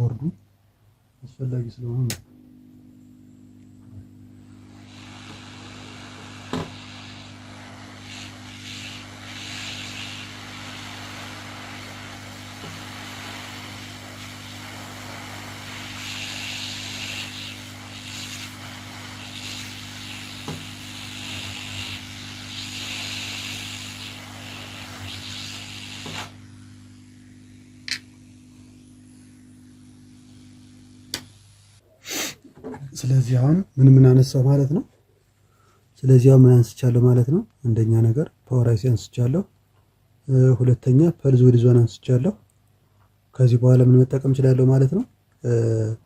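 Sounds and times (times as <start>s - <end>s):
electrical hum: 0.0s - 39.6s
hot-air station blowing: 2.1s - 32.4s
sharp click: 27.8s - 28.1s.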